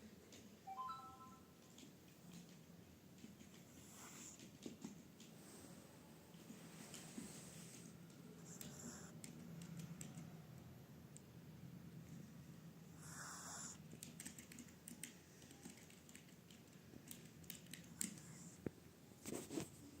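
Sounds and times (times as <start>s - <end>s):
puppy snoring softly: 3.6s - 4.6s, 7.0s - 9.2s, 12.9s - 13.8s.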